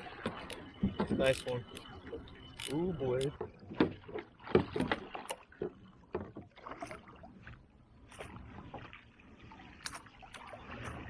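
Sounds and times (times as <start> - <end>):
fish and gear bumping kayak hull: 0.0 - 7.2
water splashing: 0.0 - 11.0.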